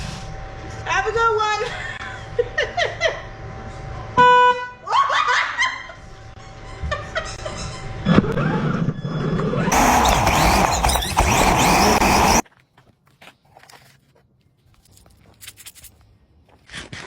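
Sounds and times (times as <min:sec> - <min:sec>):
voices: 0:09.7 - 0:12.4.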